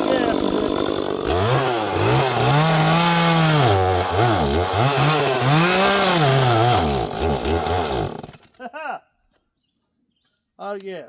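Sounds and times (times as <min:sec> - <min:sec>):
chainsaw cutting through log: 0:00.0 - 0:08.6.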